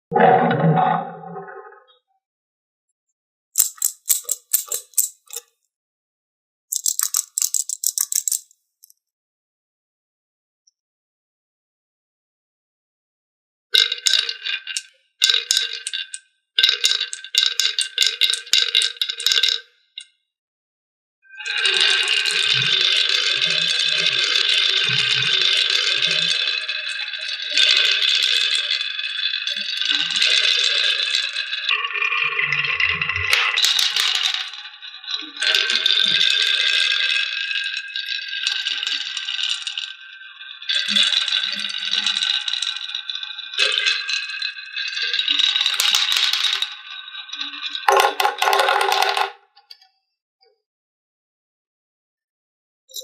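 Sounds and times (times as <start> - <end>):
marbles rattling down plastic track: 3.6 - 5.4, 6.7 - 8.5, 13.8 - 19.6, 21.7 - 28.8, 33.3 - 34.8, 40.8 - 47.1, 47.7 - 49.4
hard clicking rattle: 6.7 - 8.5.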